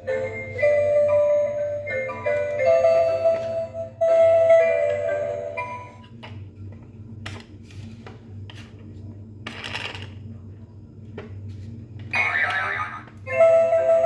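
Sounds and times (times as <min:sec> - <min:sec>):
low steady hum: 0:00.0 - 0:14.0
toy funny sound effect: 0:12.2 - 0:13.1.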